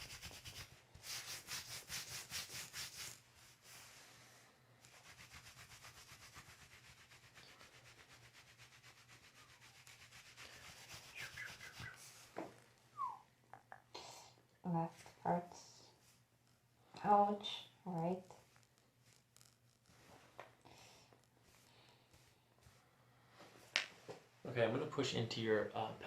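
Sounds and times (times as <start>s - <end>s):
faint rhythmic rubbing: 0.0s - 12.9s, 14.9s - 23.7s.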